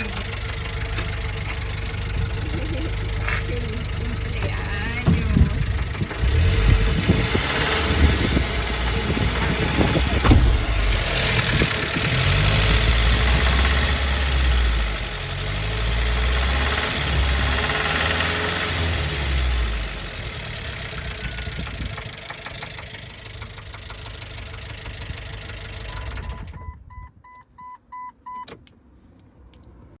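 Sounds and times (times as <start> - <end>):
car engine revving: 0.0 - 24.4
click: 28.4 - 29.7.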